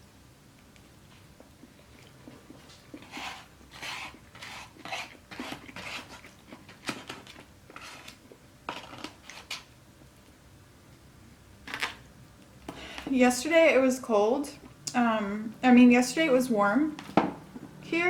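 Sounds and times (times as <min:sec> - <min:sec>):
crunchy food chewing: 0:01.4 - 0:09.7.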